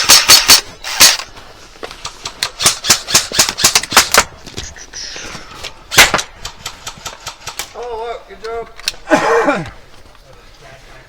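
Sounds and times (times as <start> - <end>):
airsoft gun firing pops: 5.9 - 7.7.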